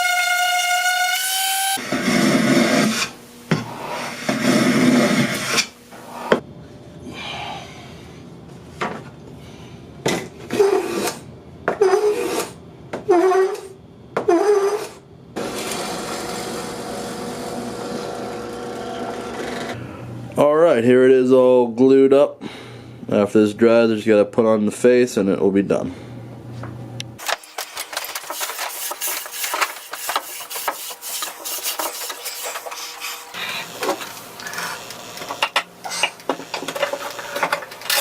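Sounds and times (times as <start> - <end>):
sandpaper rasping on wood: 27.3 - 33.4.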